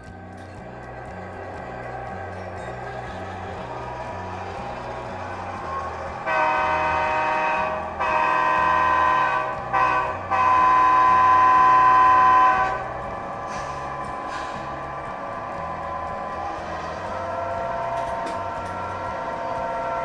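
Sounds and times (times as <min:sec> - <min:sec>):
model train air horn blasts: 0:03.7 - 0:15.2, 0:16.6 - 0:20.0.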